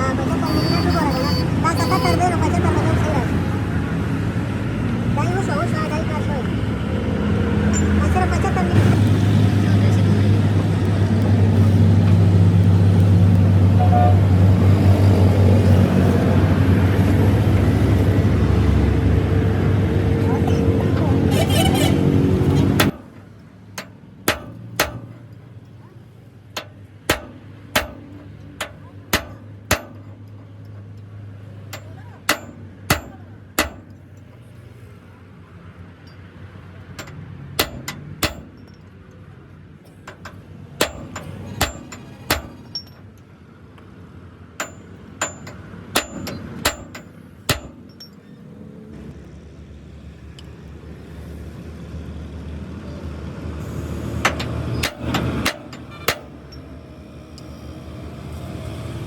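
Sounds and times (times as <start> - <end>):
loud engine-like noise: 0.0 - 25.4, 44.6 - 59.0
hammer striking metal: 22.5 - 25.4, 26.6 - 30.9, 31.6 - 34.4, 37.0 - 38.9, 40.1 - 43.1, 44.6 - 48.2, 54.2 - 56.7.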